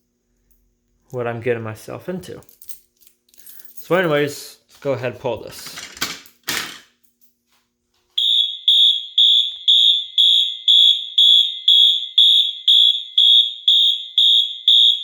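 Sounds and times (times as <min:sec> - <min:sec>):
fire alarm beeping: 0:08.2 - 0:15.0.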